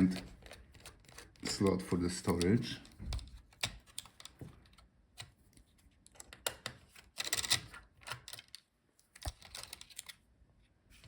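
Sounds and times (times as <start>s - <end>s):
small parts clicking and scraping: 0.0s - 5.3s, 6.0s - 10.2s.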